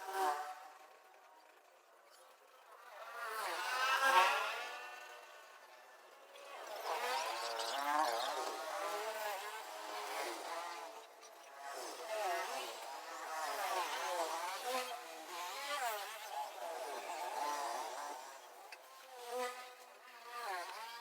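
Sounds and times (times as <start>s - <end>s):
small engines buzzing: 0.0s - 21.0s.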